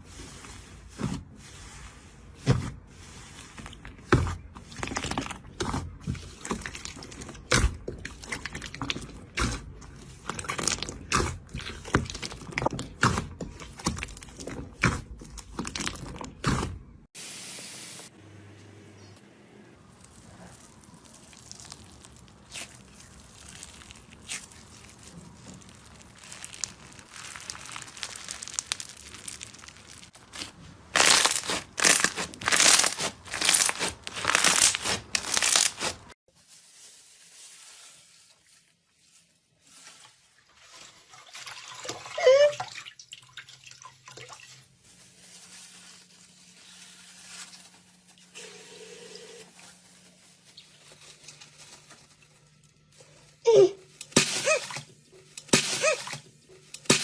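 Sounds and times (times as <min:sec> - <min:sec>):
slime crackling and crunching: 0:01.9 - 0:16.6, 0:19.8 - 0:38.5
soft slime squishing: 0:19.8 - 0:40.3.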